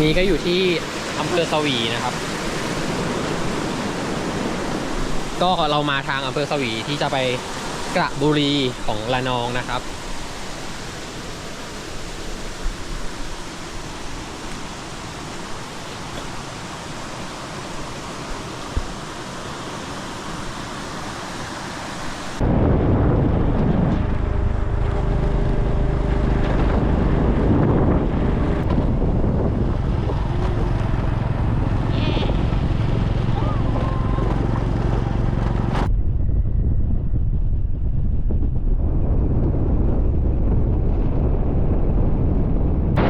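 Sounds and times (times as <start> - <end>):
wind buffeting microphone: 0.0 - 20.8, 21.4 - 43.0
water rushing over waterfall: 0.0 - 22.6, 25.2 - 35.8
motorcycle engine drone: 22.4 - 43.0.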